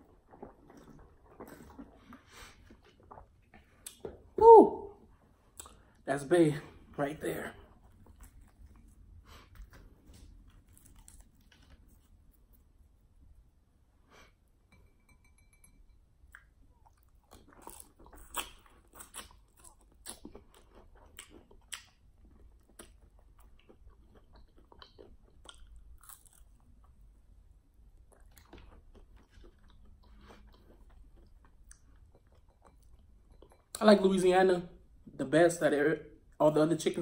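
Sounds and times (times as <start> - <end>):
crunchy chewing: 0.0 - 4.0, 7.8 - 12.4, 16.8 - 27.0.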